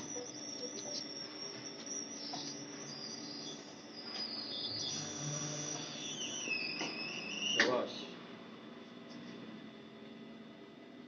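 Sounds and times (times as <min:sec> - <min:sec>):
high-pitched electrical whine: 0:00.0 - 0:08.8.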